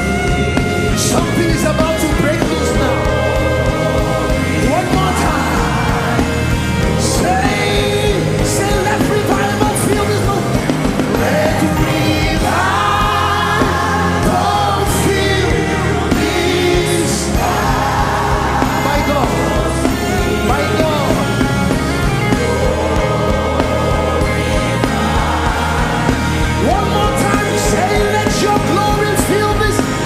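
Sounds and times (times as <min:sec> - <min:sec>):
gospel band playing: 0:00.0 - 0:30.0
several voices singing: 0:00.0 - 0:30.0.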